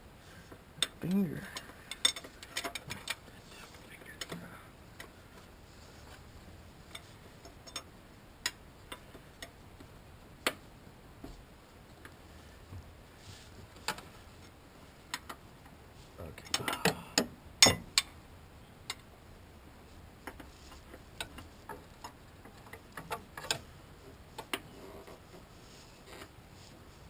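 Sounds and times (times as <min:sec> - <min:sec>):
hand tools clicking and tapping: 0:00.8 - 0:03.2.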